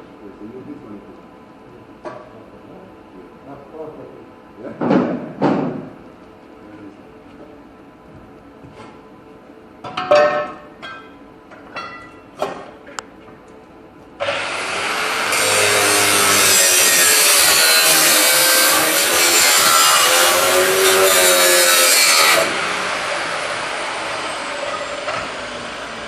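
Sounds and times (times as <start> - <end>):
handheld power tool cutting: 14.2 - 26.0.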